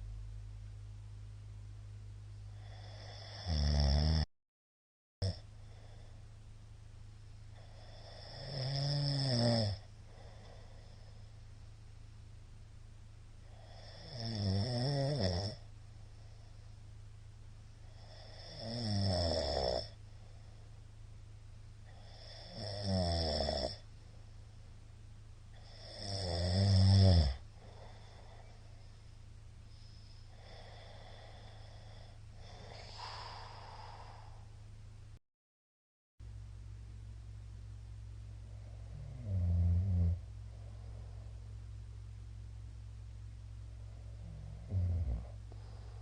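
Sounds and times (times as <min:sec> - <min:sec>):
quiet breaths: 0:00.0 - 0:03.6, 0:05.2 - 0:35.2, 0:36.2 - 0:46.0
steady low hum: 0:00.0 - 0:04.2, 0:05.2 - 0:35.2, 0:36.2 - 0:46.0
man snoring: 0:02.6 - 0:04.3, 0:05.2 - 0:06.1, 0:07.6 - 0:11.0, 0:13.5 - 0:15.6, 0:17.9 - 0:20.0, 0:21.9 - 0:23.8, 0:25.6 - 0:28.4, 0:30.3 - 0:34.5, 0:38.6 - 0:40.2, 0:44.2 - 0:46.0.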